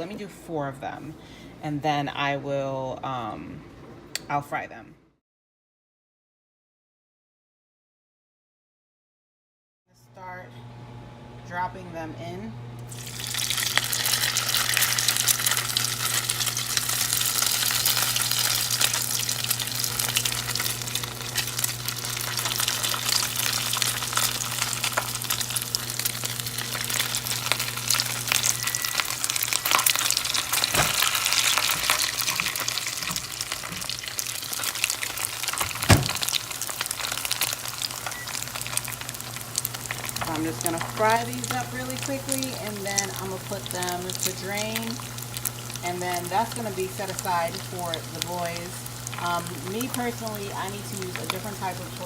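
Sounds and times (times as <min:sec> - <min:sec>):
food sizzling in hot oil: 0:12.9 - 0:52.0.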